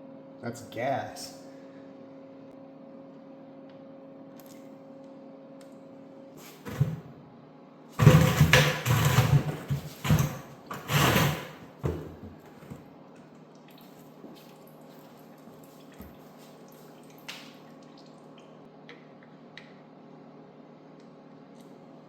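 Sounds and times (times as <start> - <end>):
faint steady hum: 0.0 - 22.0
metal parts knocking and scraping: 8.0 - 11.6.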